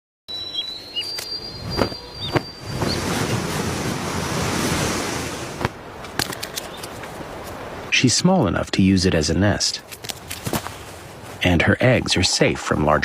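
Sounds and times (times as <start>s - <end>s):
bird chirps: 0.3s - 3.2s.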